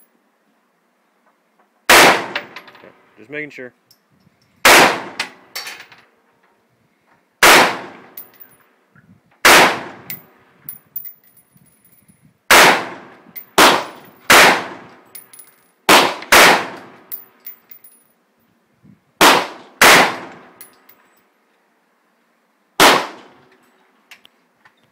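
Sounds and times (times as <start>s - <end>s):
rifle gunshots: 1.9s - 2.6s, 4.6s - 5.4s, 7.4s - 8.2s, 9.4s - 10.0s, 12.5s - 14.8s, 15.9s - 17.0s, 19.2s - 20.5s, 22.8s - 23.3s
ringing gunshot echo: 22.8s - 23.3s.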